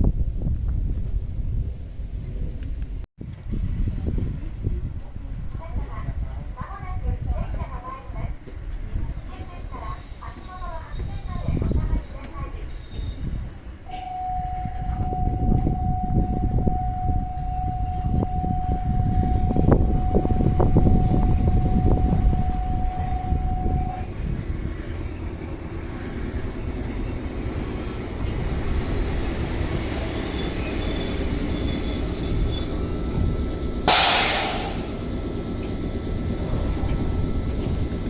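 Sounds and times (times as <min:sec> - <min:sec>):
electric train rumbling: 0:00.0 - 0:38.0
steady high tone: 0:13.9 - 0:24.2, 0:31.9 - 0:38.0.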